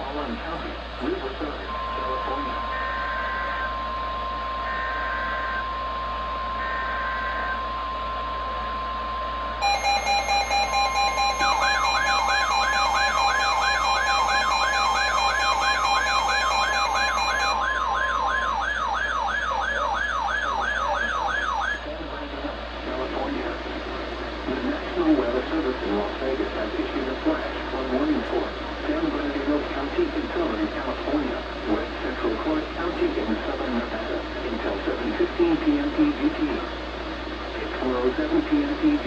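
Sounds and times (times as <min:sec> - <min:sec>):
rapid pulsing beep: 0:01.7 - 0:07.9, 0:09.6 - 0:18.8
steady lower tone: 0:01.7 - 0:19.4
warbling siren tone: 0:02.5 - 0:08.2, 0:09.6 - 0:21.8
steady alert tone: 0:09.6 - 0:18.9.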